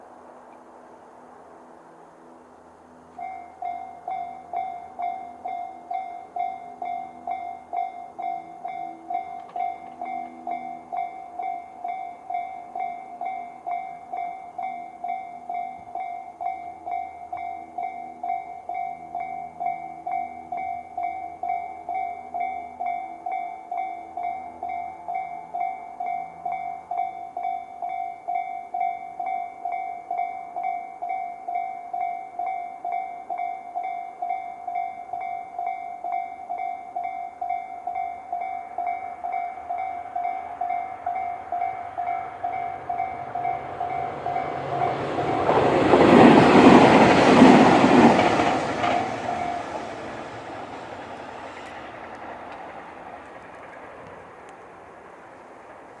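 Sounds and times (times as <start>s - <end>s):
electric train passing: 0.0s - 56.0s
level-crossing alarm bell ringing: 3.1s - 51.7s.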